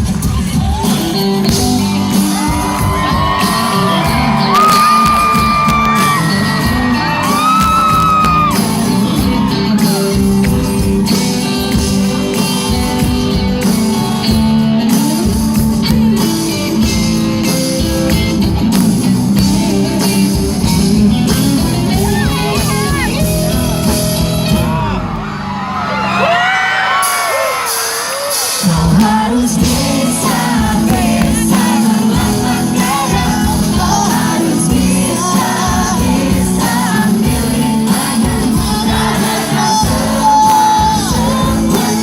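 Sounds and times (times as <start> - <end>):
live pop-rock band playing: 0.0 - 42.0
person singing: 28.5 - 42.0.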